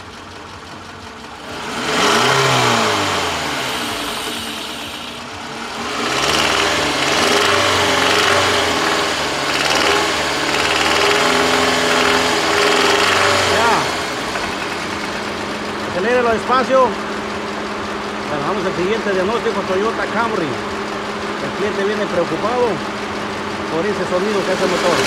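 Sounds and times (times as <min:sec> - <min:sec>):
car engine revving: 0:01.2 - 0:17.3, 0:21.4 - 0:25.0.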